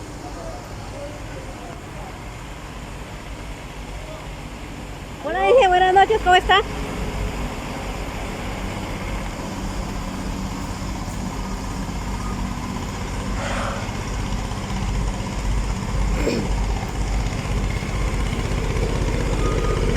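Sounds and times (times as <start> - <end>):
large vehicle engine idling: 0.0 - 19.9
short noisy burst: 12.0 - 19.9.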